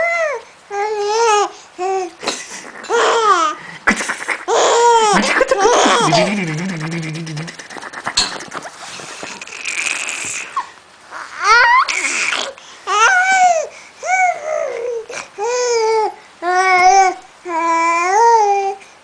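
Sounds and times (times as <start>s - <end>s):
baby crying: 2.8s - 3.6s, 4.4s - 6.5s.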